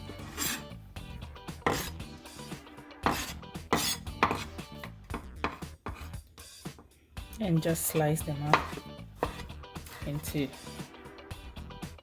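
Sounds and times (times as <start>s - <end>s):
knife striking cutting board: 0.3s - 0.6s, 1.6s - 2.0s, 3.0s - 4.5s, 5.1s - 6.1s, 8.5s - 9.5s.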